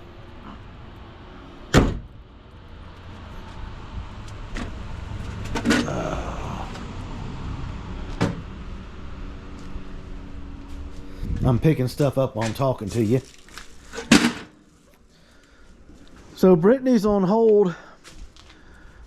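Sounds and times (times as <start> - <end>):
rustle: 12.9 - 16.4.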